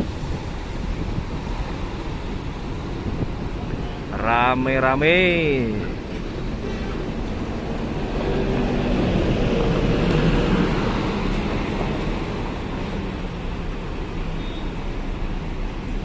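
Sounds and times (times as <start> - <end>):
bus engine passing: 5.2 - 16.0.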